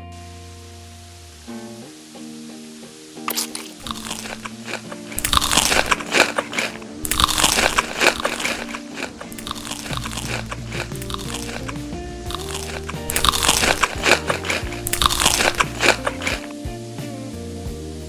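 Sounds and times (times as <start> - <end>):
crunchy food being chewed: 3.3 - 16.5.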